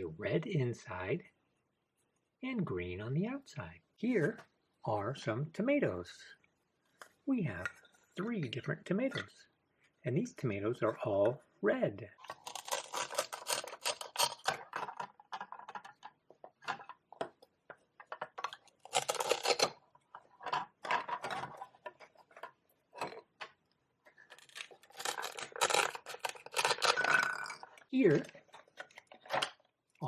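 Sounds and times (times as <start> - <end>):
toy pieces clicking and knocking: 12.3 - 17.0, 18.0 - 21.3, 24.2 - 29.6
velcro tearing: 12.4 - 14.4, 18.8 - 19.7, 24.3 - 27.3.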